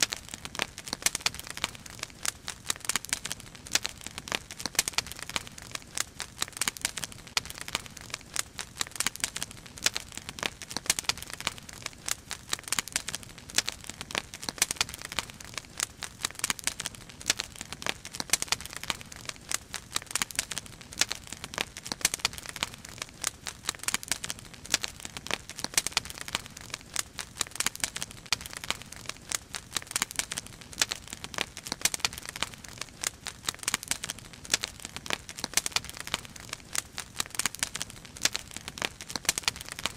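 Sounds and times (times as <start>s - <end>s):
firewood crackling and popping: 0.0s - 39.9s.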